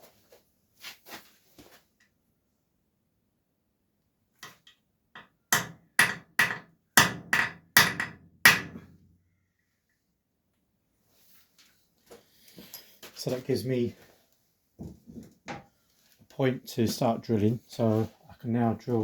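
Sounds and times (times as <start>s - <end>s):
hammer striking metal punch: 5.2s - 9.0s.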